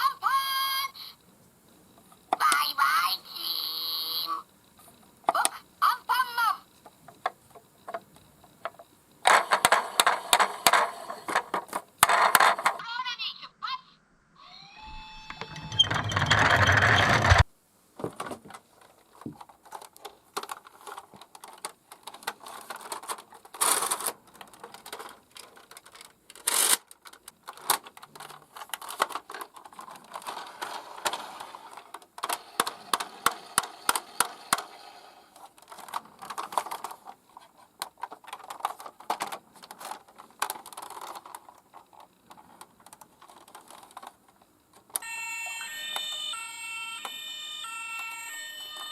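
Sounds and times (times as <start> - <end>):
toy cars clicking on track: 8.6 - 12.8, 19.6 - 37.1, 37.8 - 48.9
loud rattling noise: 14.9 - 17.5.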